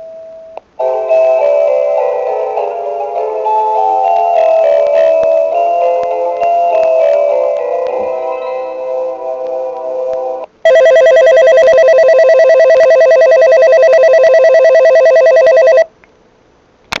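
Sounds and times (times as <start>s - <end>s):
chiming train-departure melody: 0.8s - 10.1s
rapidly trilling electronic bell: 10.7s - 15.9s.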